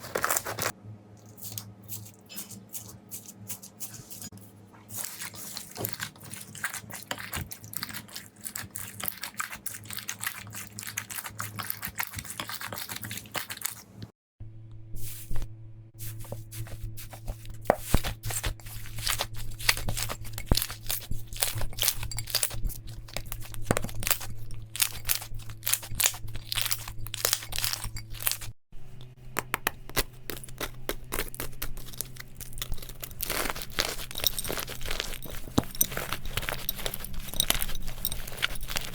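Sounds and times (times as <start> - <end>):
slime crackling and popping: 29.4 - 38.9.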